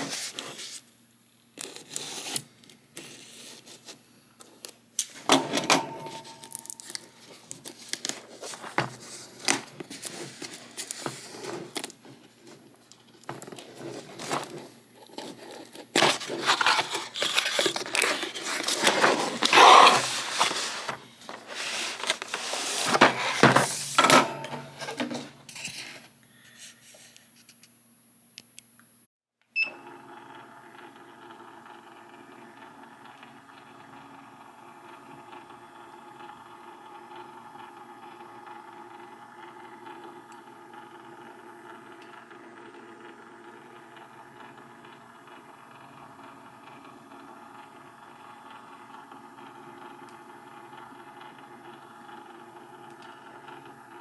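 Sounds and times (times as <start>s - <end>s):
packaging being pulled apart: 6.3s - 12.1s, 13.2s - 23.9s.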